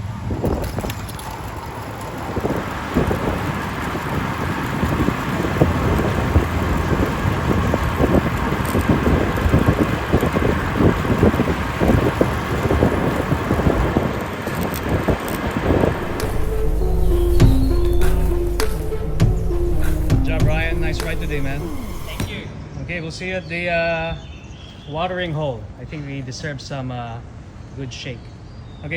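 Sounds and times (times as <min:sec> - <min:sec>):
wind buffeting microphone: 0:00.0 - 0:16.2
road traffic noise: 0:00.0 - 0:22.6.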